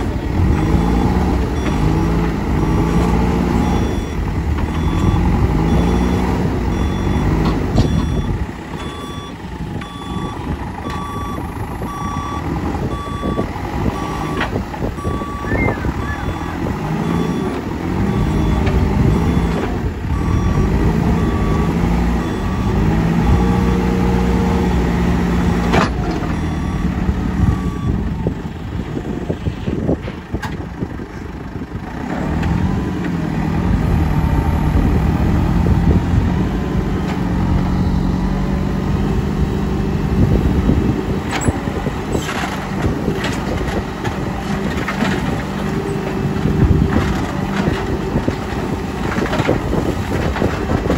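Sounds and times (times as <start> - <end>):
diesel engine revving: 0.0 - 50.9
reversing alarm beeping: 0.6 - 23.7, 26.3 - 28.0, 37.6 - 38.3.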